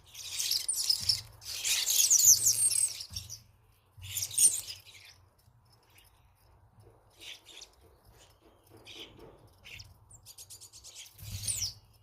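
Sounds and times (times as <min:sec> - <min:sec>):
starlings chirping: 0:00.0 - 0:12.0.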